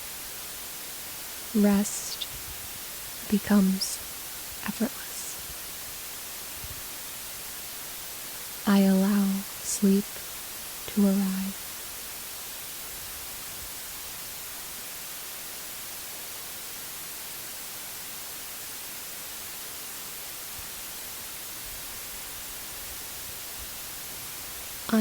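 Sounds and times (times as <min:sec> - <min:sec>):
white noise hiss: 0:00.0 - 0:25.0.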